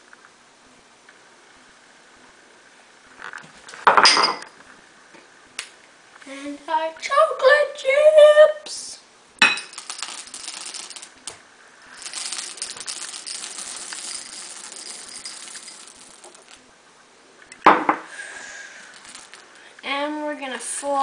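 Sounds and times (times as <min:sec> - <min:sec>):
chocolate chips pouring into bowl: 0:09.6 - 0:11.3, 0:11.9 - 0:16.6, 0:18.4 - 0:19.6
loud clatter: 0:12.0 - 0:16.6.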